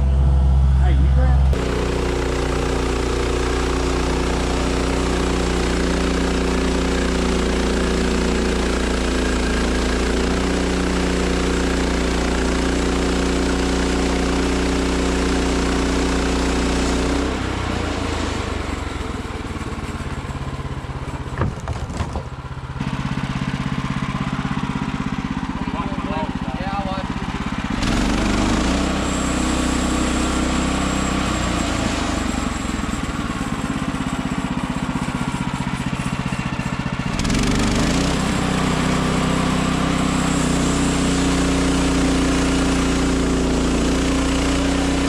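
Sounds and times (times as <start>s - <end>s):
sawmill engine running: 0.0s - 45.0s
saw cutting through log: 1.6s - 45.0s
knocks: 21.3s - 22.3s.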